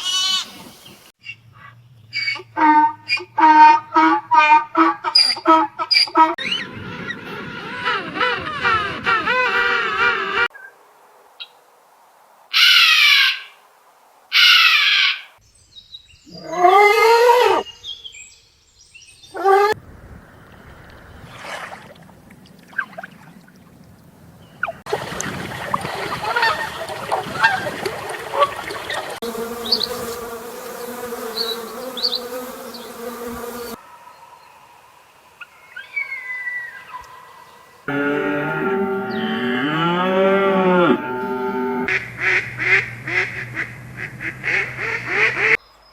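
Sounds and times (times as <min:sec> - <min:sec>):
outdoor ambience: 0:00.0 - 0:45.9
animal wavering cries: 0:16.3 - 0:17.7.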